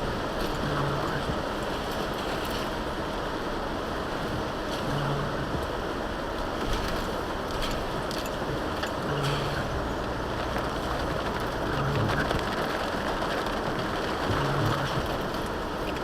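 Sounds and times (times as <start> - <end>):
vehicle road and wind noise: 0.0 - 16.0
raindrops ticking: 6.8 - 16.0.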